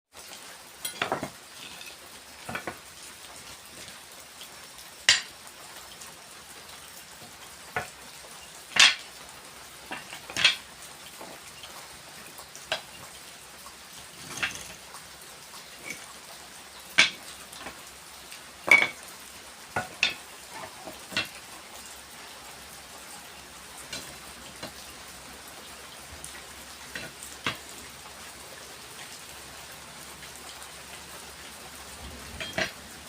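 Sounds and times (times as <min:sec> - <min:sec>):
metal tools clinking: 0:14.2 - 0:14.8, 0:15.8 - 0:16.1, 0:18.7 - 0:19.0, 0:32.4 - 0:32.8.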